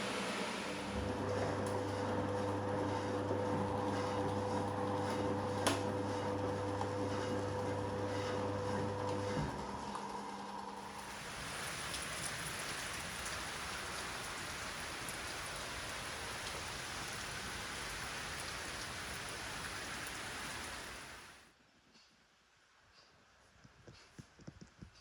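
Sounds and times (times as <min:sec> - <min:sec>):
water spraying into washing machine: 0:00.0 - 0:04.7, 0:10.8 - 0:21.3.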